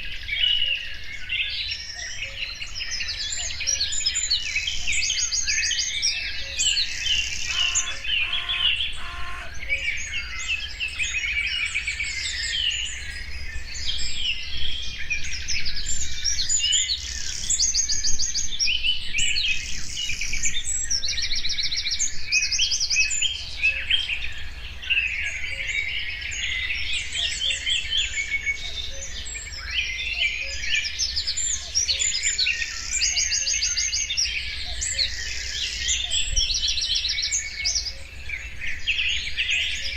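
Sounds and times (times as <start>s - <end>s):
songbirds chorus: 0.0s - 39.9s.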